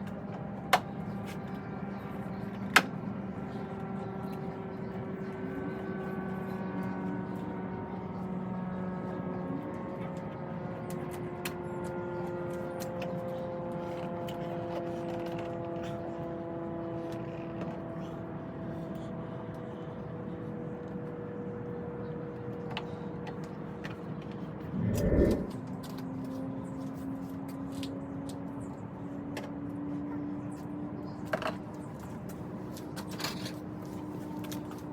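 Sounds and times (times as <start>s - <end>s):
steady mechanical hum: 0.0s - 34.9s
rising tone: 24.7s - 25.7s.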